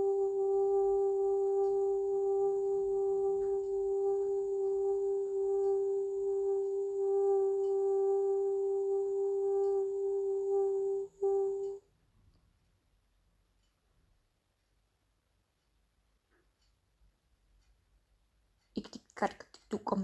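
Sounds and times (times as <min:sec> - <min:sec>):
steady meditative drone tone: 0:00.0 - 0:11.8.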